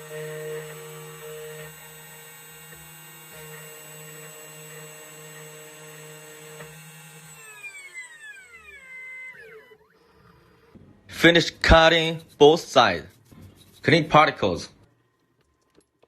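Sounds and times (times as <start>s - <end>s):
spindle motor whine: 0.0s - 10.8s.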